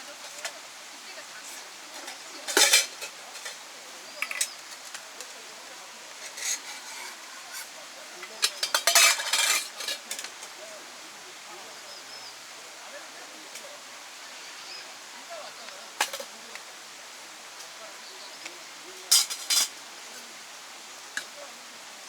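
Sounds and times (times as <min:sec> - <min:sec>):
dishes and cutlery clattering: 0:01.9 - 0:05.4, 0:06.1 - 0:10.5, 0:19.1 - 0:19.8.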